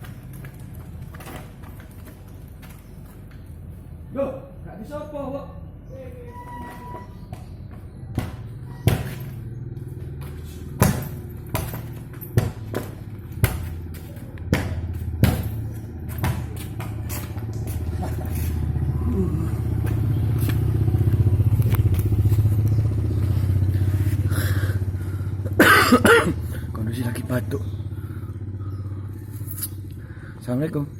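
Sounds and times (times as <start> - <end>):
low engine hum: 0.0 - 4.1, 5.7 - 30.9
ball thumps: 10.2 - 17.5.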